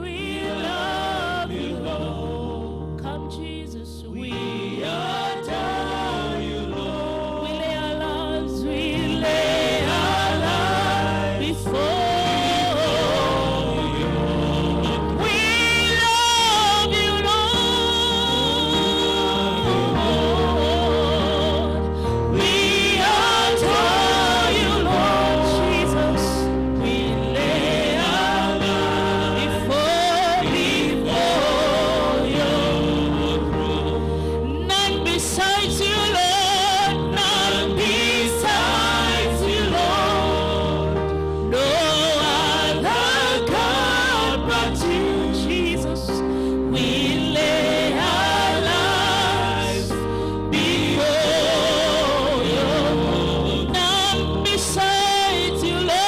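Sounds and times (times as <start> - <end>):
keyboard and bass accompaniment: 0.0 - 56.0
voices singing praise song: 0.0 - 56.0
sustained chords: 4.4 - 55.9.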